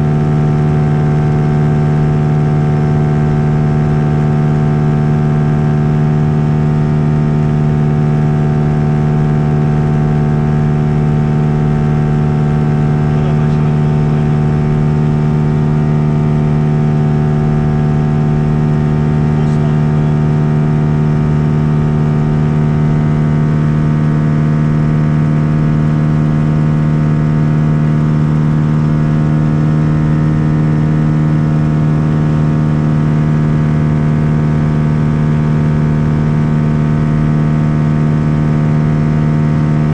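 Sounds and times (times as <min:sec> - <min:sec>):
propeller plane engine drone: 0:00.0 - 0:39.9.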